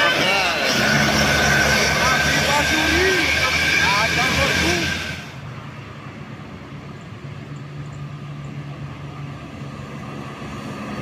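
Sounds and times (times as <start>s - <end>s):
road noise: 0.0s - 11.0s
vehicle engine drone: 0.0s - 11.0s.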